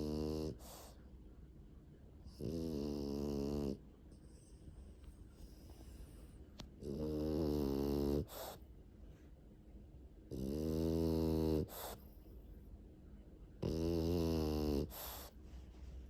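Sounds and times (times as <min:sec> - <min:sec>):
dog snoring loudly: 0:00.0 - 0:00.8, 0:02.4 - 0:03.8, 0:06.8 - 0:08.6, 0:10.3 - 0:12.0, 0:13.6 - 0:15.3.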